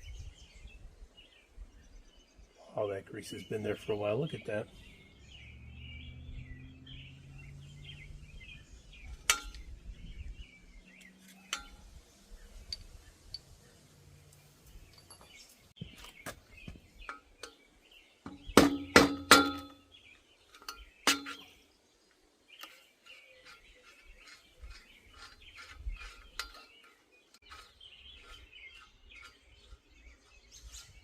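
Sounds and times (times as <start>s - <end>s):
metal bicycle parts clinking: 9.2s - 9.7s, 11.2s - 12.0s, 14.8s - 15.6s, 20.5s - 21.6s.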